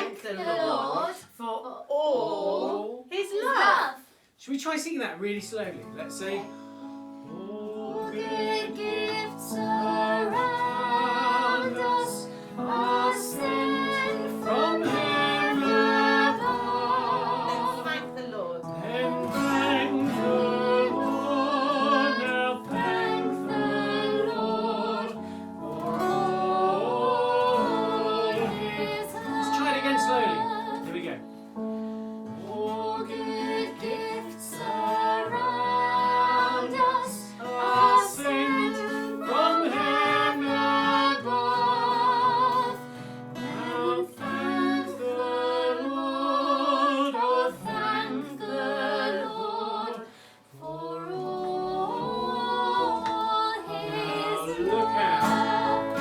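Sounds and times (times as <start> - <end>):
women singing: 0.0 - 1.3, 7.2 - 31.3, 32.3 - 56.0
instrumental accompaniment: 5.9 - 45.4.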